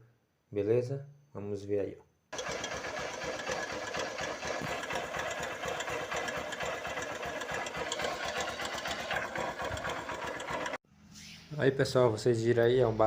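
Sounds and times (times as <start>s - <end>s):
motorcycle engine running: 2.4s - 10.8s
rapid metallic knocking: 2.4s - 10.8s.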